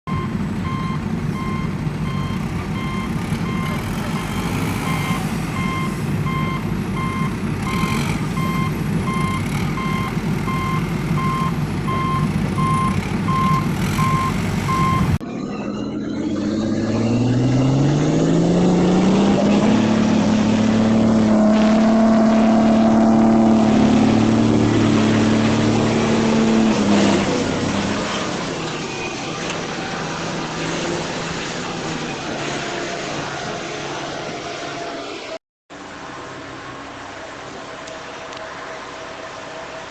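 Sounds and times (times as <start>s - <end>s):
reversing alarm beeps: 0.1s - 17.8s
low engine rumble: 0.1s - 18.4s.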